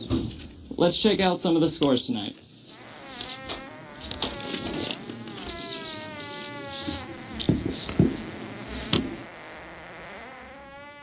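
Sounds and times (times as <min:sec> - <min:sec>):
rustling: 0:00.0 - 0:09.3
buzz with wavering pitch: 0:02.7 - 0:11.0.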